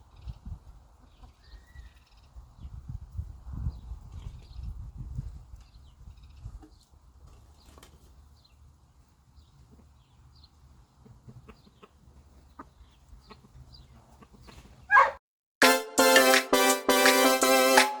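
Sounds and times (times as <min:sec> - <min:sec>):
chickens clucking: 0:09.5 - 0:15.1.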